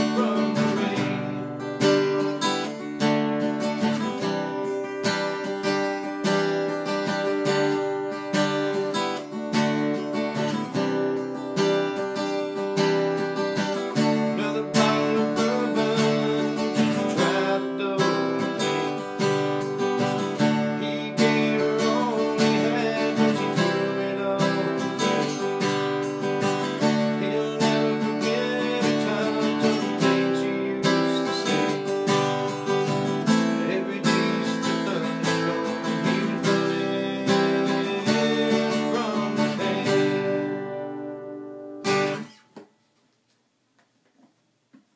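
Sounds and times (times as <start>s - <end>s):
acoustic guitar strumming: 0.0s - 42.8s.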